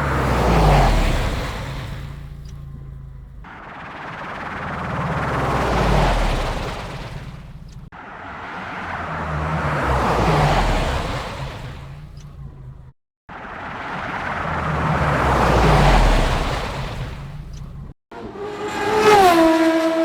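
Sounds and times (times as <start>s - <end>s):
futuristic vehicle fly-by whoosh: 0.0s - 20.0s
low wavering hum: 1.0s - 10.0s.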